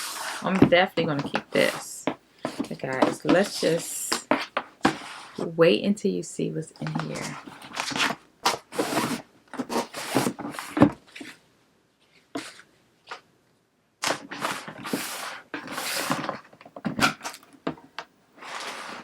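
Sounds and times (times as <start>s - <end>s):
paper and cardboard rustling: 0.0s - 5.5s, 6.8s - 11.4s, 14.0s - 17.5s.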